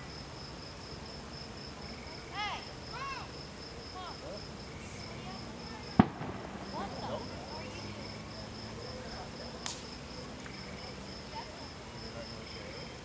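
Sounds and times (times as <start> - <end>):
insect chirping: 0.0 - 13.0
sharp pop: 6.0 - 6.5, 9.6 - 9.9.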